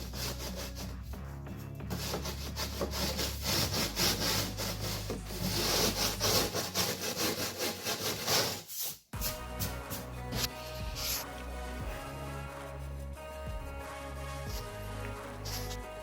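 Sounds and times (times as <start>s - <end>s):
hand saw cutting board: 0.0s - 1.0s, 1.9s - 9.8s.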